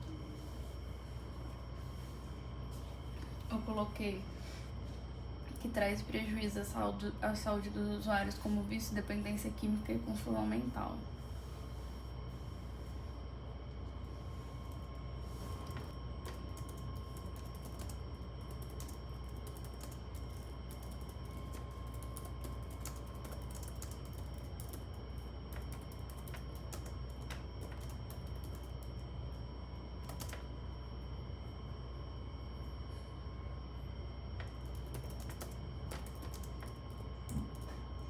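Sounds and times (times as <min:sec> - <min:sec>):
steady low hum: 0:00.0 - 0:38.0
typing on computer keyboard: 0:15.6 - 0:29.0, 0:30.0 - 0:30.5, 0:34.4 - 0:37.8.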